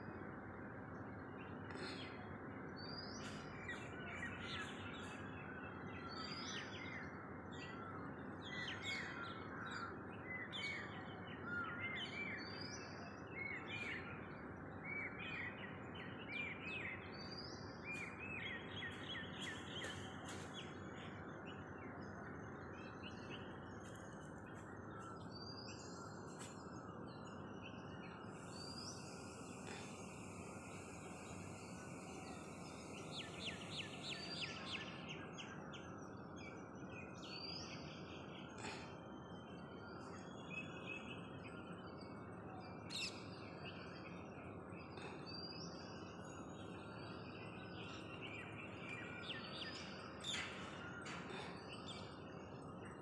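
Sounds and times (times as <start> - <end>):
birds chirping: 11.5 - 53.0.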